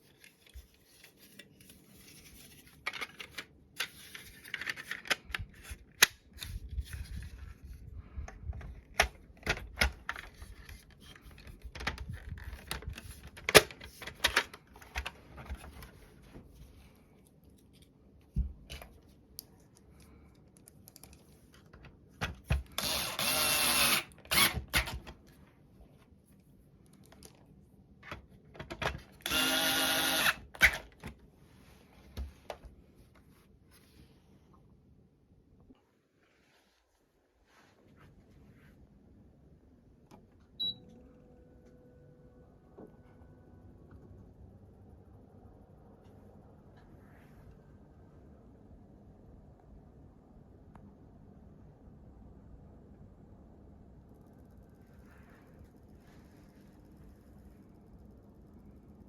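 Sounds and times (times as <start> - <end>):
plastic parts clicking and knocking: 2.8 - 6.2, 8.2 - 15.9, 28.0 - 29.5
electric screwdriver running: 22.8 - 24.8, 29.3 - 30.8.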